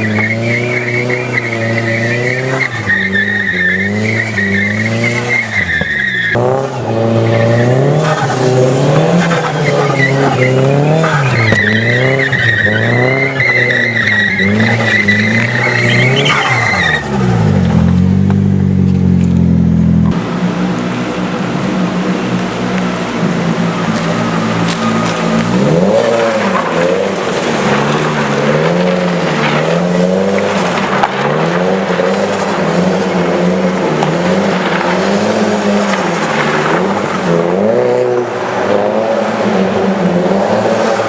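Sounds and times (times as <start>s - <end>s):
tyre squeal: 0.0s - 17.6s, 22.9s - 33.0s
car engine revving: 0.0s - 41.0s.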